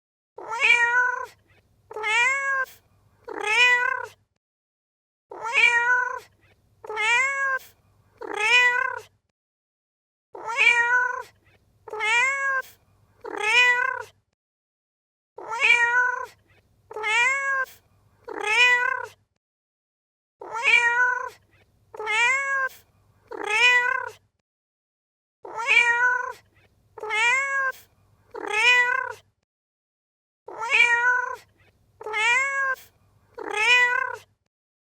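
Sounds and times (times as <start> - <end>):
cat meowing: 0.4 - 4.2, 5.3 - 9.1, 10.4 - 14.2, 15.4 - 19.2, 20.4 - 24.2, 25.5 - 29.2, 30.5 - 34.3.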